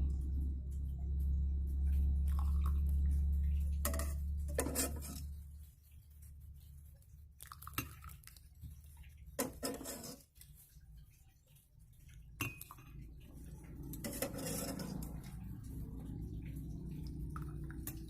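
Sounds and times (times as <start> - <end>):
low steady hum: 0.0 - 18.0
metal spoon clinking against pot: 9.4 - 10.2, 13.9 - 15.3.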